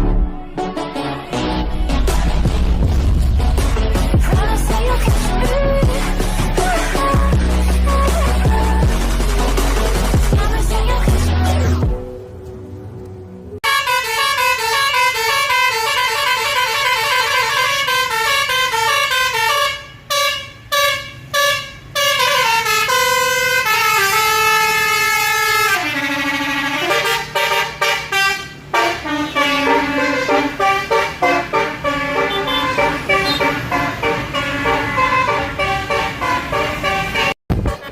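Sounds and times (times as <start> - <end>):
musical bus air horn: 13.6 - 37.9.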